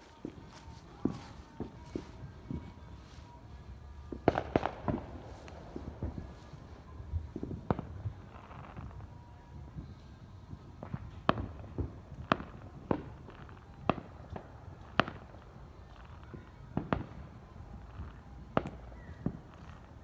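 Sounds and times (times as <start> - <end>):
fireworks bangs: 0.0 - 3.3, 4.1 - 9.0.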